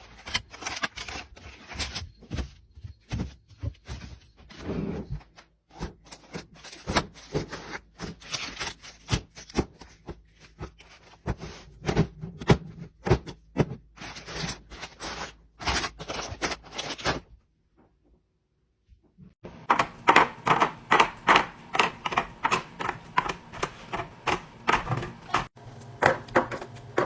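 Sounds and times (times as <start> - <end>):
clicks and knocks of items: 19.6 - 27.0.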